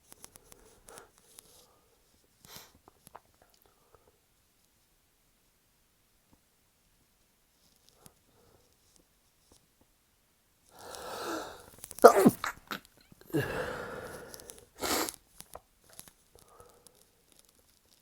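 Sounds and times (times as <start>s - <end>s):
sniffs: 0.5s - 2.8s, 10.8s - 12.5s, 13.3s - 15.2s
person sneezing: 10.8s - 12.5s, 13.3s - 15.1s.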